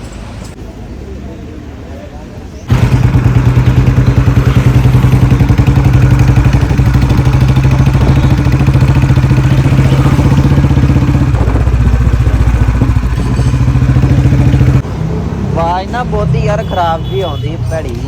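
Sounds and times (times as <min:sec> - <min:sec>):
motorcycle engine running: 0:02.7 - 0:14.9.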